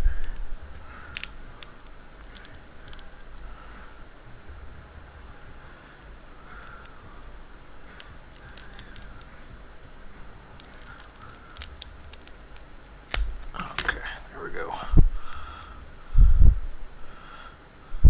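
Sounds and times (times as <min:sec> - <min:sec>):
small sharp clicks and scratches: 0:00.3 - 0:03.5, 0:05.4 - 0:07.3, 0:07.9 - 0:14.1
adhesive tearing: 0:08.0 - 0:09.4, 0:10.6 - 0:14.7.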